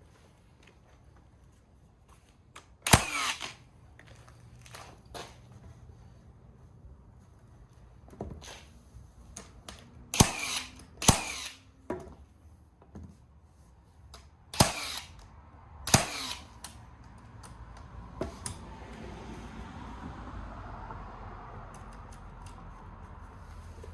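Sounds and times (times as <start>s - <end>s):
nail gun shots: 2.8s - 3.6s, 10.1s - 11.6s, 14.6s - 15.2s, 15.9s - 16.6s.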